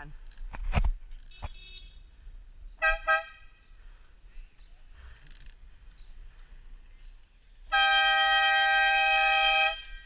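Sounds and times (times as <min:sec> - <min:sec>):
train horn blast: 0:07.7 - 0:10.0.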